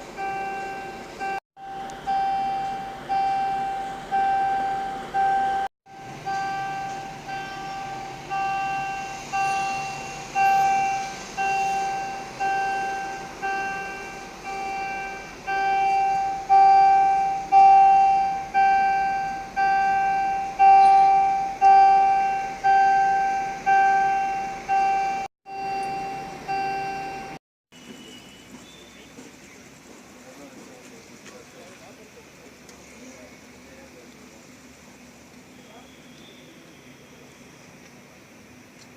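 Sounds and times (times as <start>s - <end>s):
electronic chime tone: 0.2s - 27.4s.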